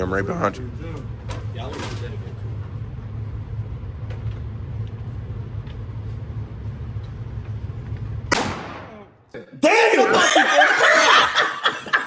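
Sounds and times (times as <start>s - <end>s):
steady low hum: 0.0s - 9.6s
pistol shot: 8.3s - 9.1s.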